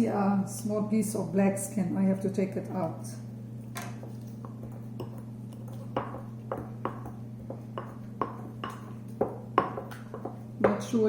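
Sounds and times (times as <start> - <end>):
wooden masher knocking a bowl: 3.8 - 11.0.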